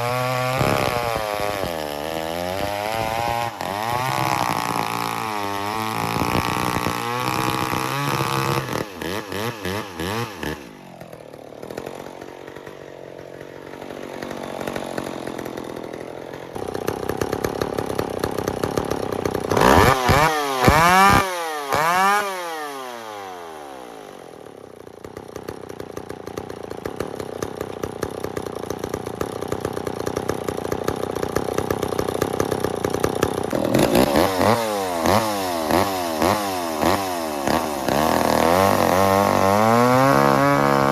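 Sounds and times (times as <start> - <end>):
chainsaw revving: 0.0 - 40.9.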